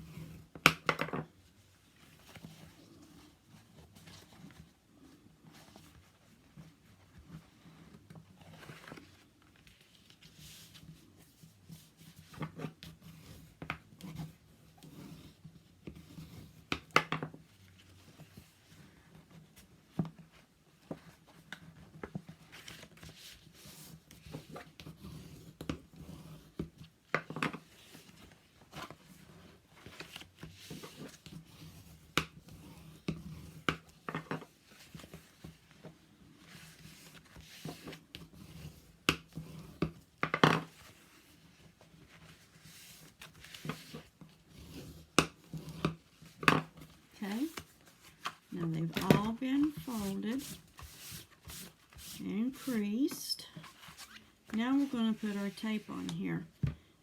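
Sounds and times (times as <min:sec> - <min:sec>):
paper rustling and rubbing: 0:17.4 - 0:26.6, 0:27.6 - 0:39.9, 0:40.6 - 0:56.2.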